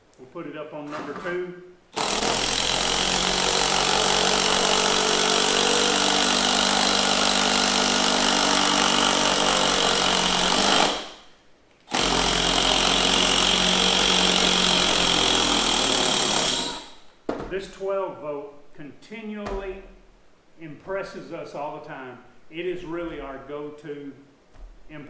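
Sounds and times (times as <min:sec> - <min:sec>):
impact driver whirring: 0:01.9 - 0:11.3, 0:11.9 - 0:17.1.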